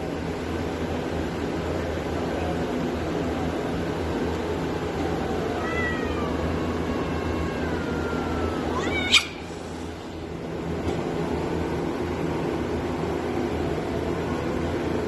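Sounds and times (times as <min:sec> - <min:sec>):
low background hum: 0:00.0 - 0:15.0
cat meowing: 0:05.6 - 0:09.5.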